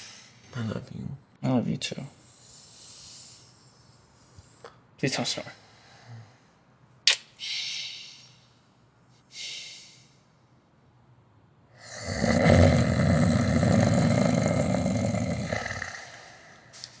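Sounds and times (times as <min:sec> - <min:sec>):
man snoring: 0:11.8 - 0:16.7.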